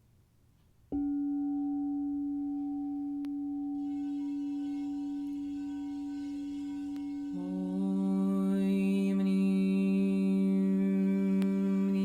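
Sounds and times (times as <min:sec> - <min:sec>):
singing bowl ringing: 0:01.0 - 0:09.7.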